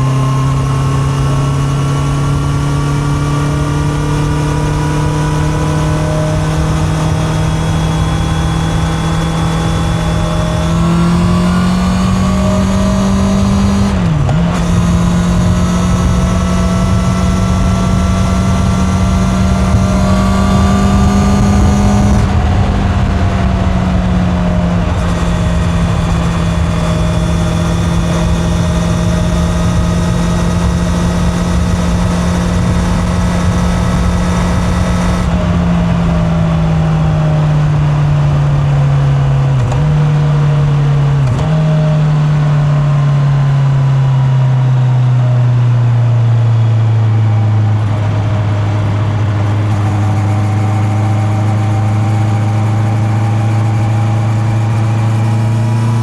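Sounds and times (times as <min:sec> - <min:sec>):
motorcycle engine running: 0:00.0 - 0:56.0
wind rush: 0:09.8 - 0:37.0.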